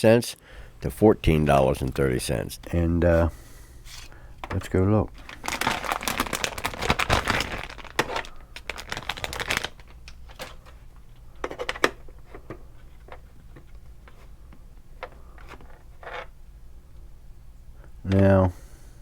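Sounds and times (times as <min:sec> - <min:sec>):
packaging crinkling and rustling: 0:03.2 - 0:16.3.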